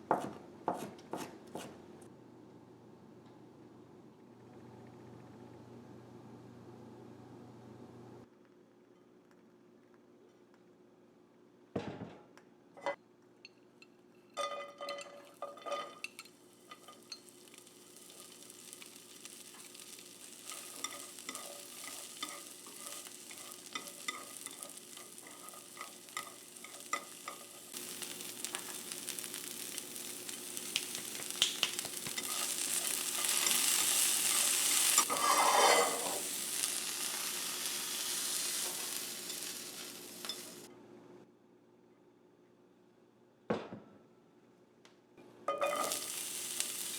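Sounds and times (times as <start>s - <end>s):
food sizzling in a frying pan: 14.4s - 40.7s, 45.5s - 46.9s.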